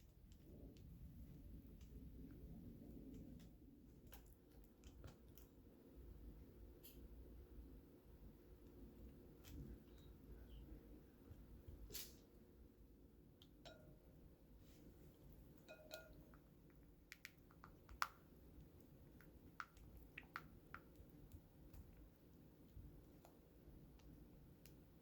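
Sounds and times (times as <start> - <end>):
faint clicks and taps: 0.0 - 5.7, 15.5 - 25.0.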